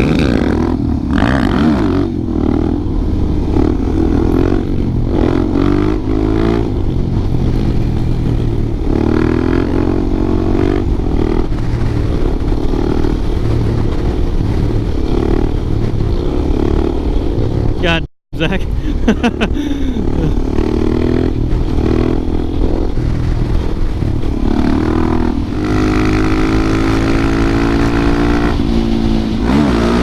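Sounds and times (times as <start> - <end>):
motorcycle engine revving through gears: 0.0 - 17.8, 19.9 - 30.0.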